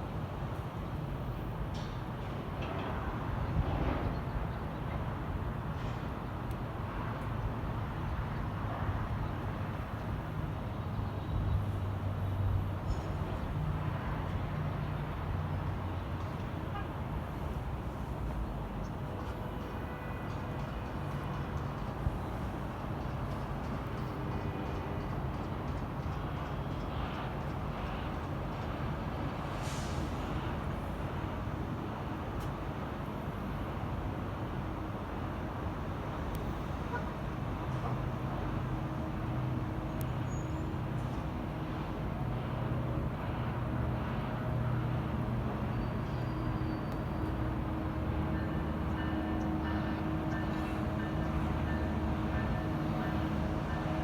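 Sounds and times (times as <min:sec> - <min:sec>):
diesel locomotive rumbling: 0:00.0 - 0:54.0
brief hiss: 0:29.5 - 0:30.3.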